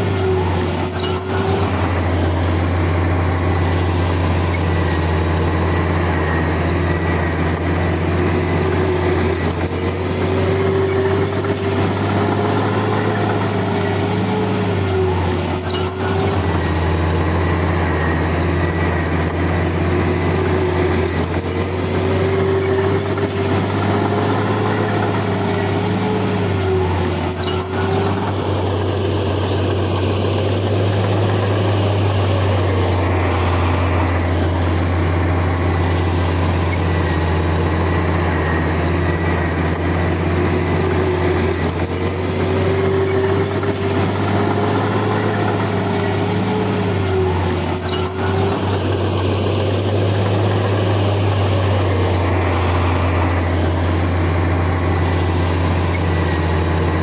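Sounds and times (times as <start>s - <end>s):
diesel engine drone under load: 0.0s - 57.0s
engine whine rising and falling: 0.0s - 57.0s.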